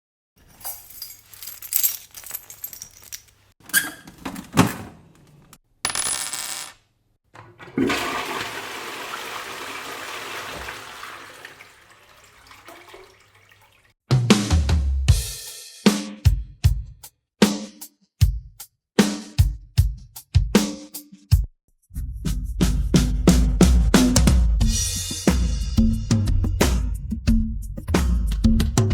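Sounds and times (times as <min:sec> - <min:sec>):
metallic clinks and jingles: 0:00.5 - 0:03.4
rush of water: 0:08.0 - 0:13.9.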